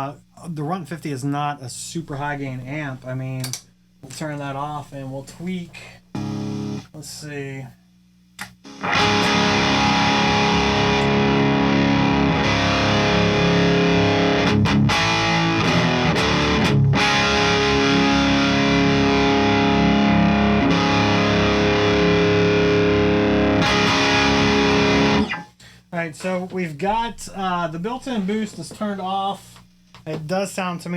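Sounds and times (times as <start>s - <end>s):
distorted electric guitar chords: 6.1s - 6.9s, 8.6s - 25.5s.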